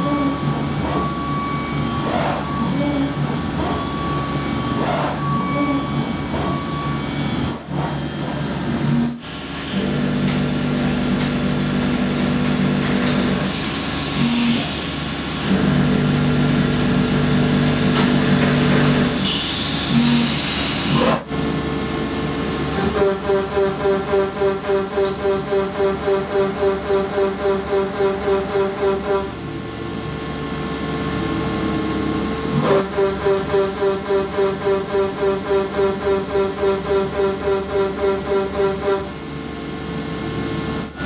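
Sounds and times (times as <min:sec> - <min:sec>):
milling machine cutting metal: 0:00.0 - 0:09.0
machine humming tone: 0:00.0 - 0:13.6.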